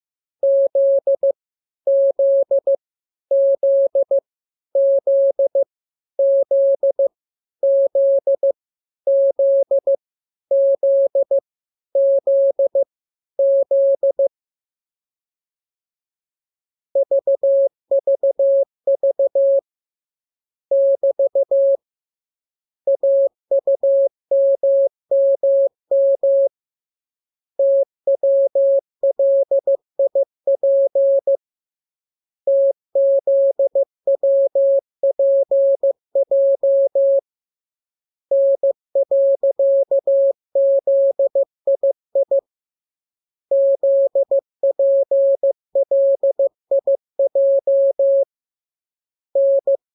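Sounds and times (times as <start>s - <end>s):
morse code beeps: 17.0s - 19.6s, 20.7s - 21.8s, 22.9s - 26.5s, 27.6s - 31.3s, 32.5s - 37.2s, 38.3s - 42.4s, 43.5s - 48.3s, 49.4s - 49.8s.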